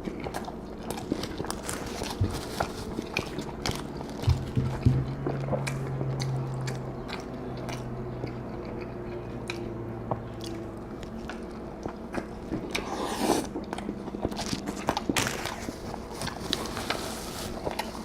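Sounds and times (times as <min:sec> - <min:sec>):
person biting and chewing food: 0:00.0 - 0:18.0.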